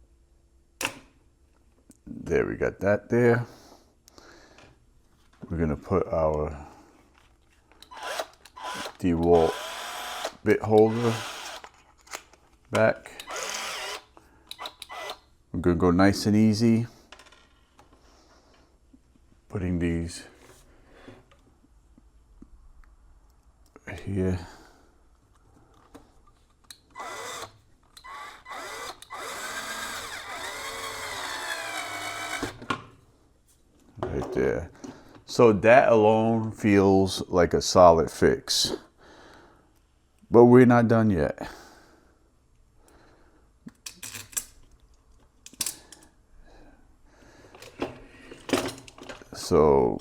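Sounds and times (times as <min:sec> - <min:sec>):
cordless drill motor whining: 0:07.8 - 0:11.7, 0:13.2 - 0:15.2, 0:26.9 - 0:32.6
parts and tools clicking and knocking: 0:14.4 - 0:15.2, 0:43.7 - 0:46.1, 0:47.5 - 0:49.3.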